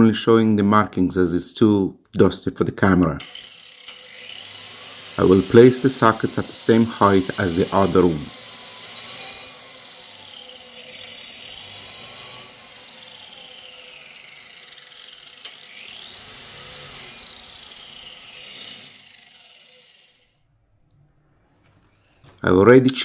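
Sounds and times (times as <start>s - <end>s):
power tool cutting masonry: 2.8s - 20.4s.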